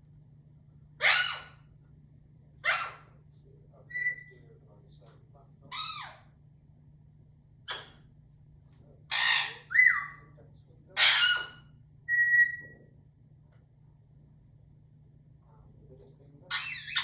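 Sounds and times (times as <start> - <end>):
bird squawking: 1.0 - 1.7, 2.6 - 3.2, 3.9 - 4.3, 9.1 - 10.3, 11.0 - 12.8, 16.5 - 17.0
bird whistling: 3.9 - 4.3, 12.1 - 12.8.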